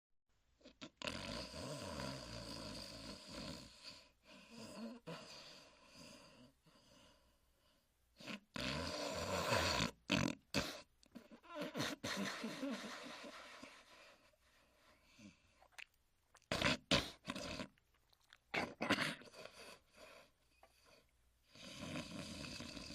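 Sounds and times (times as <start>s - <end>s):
dog snoring: 0.6s - 7.3s, 8.2s - 14.1s, 16.5s - 17.7s, 18.6s - 22.9s.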